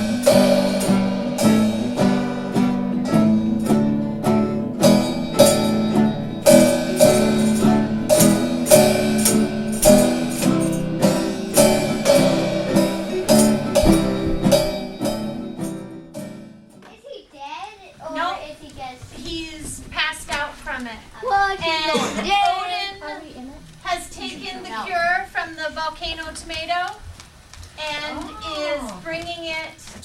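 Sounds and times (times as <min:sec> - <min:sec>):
strummed acoustic guitar: 0:00.0 - 0:16.8.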